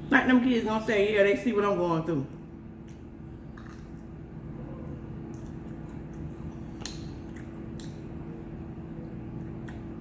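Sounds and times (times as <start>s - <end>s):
steady low hum: 0.0s - 10.0s
eating clicks and mouth smacks: 5.3s - 8.1s, 9.4s - 10.0s.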